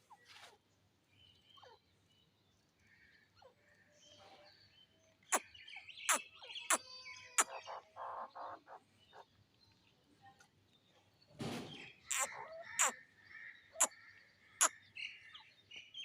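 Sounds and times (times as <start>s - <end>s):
birds calling: 4.8s - 9.4s, 11.6s - 15.9s
harsh rasping bird notes: 12.1s - 12.9s.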